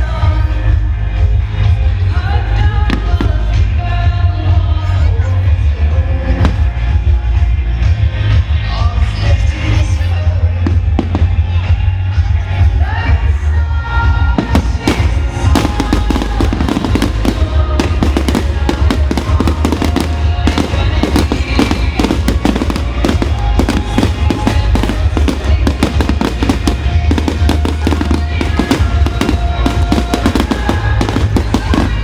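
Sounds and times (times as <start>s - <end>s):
music playing: 0.0s - 32.0s
fireworks bangs and crackling: 6.0s - 8.5s, 9.3s - 13.3s, 14.0s - 32.0s.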